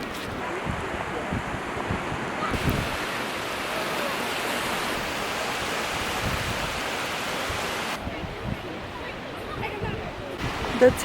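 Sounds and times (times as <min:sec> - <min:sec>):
wind on microphone: 0:00.0 - 0:03.7, 0:04.4 - 0:11.0
ocean surf on beach: 0:00.0 - 0:11.0.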